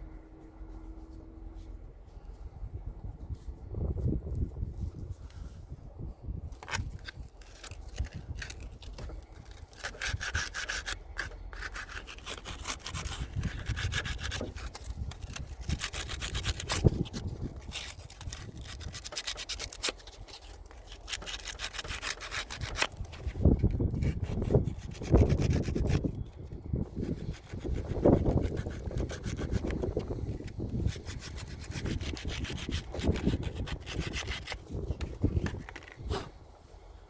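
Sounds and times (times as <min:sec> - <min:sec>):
hand sanding metal: 0:09.5 - 0:26.2, 0:26.9 - 0:34.7.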